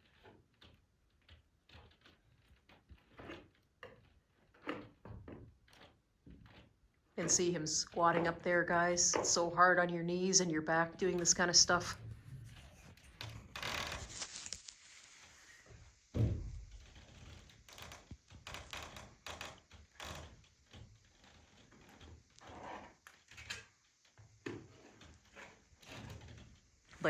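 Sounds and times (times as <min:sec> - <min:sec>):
knocks and scrapes on roof: 0:00.0 - 0:09.5, 0:15.2 - 0:23.3
heavy thump: 0:16.1 - 0:16.7.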